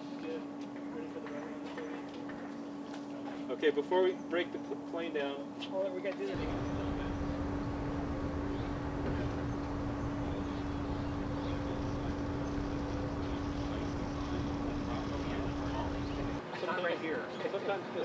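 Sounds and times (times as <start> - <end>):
steady mechanical hum: 0.0 - 18.0
constant rushing noise: 6.4 - 16.4.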